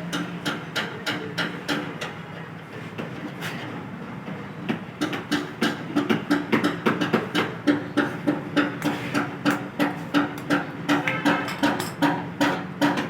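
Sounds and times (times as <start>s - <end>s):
hammer tapping on metal: 0.1s - 2.2s, 5.0s - 13.0s.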